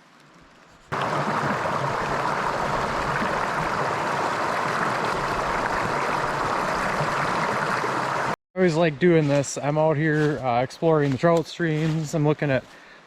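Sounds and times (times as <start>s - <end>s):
stream water flowing: 0.9s - 8.4s.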